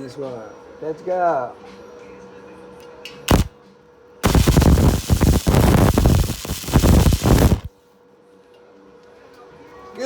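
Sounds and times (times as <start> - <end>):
arc welding crackling: 3.3 - 3.5, 4.2 - 7.7.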